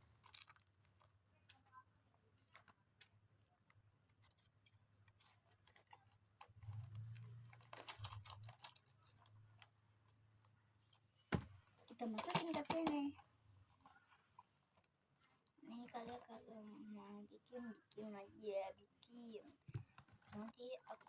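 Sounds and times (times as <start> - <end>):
hands handling packaging: 0.1 - 10.2, 11.9 - 16.4.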